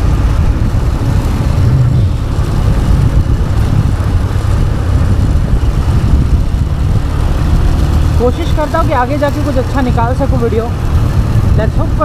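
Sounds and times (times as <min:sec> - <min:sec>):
loud steady low rumble: 0:00.0 - 0:12.0
motorcycle engine running: 0:00.0 - 0:12.0.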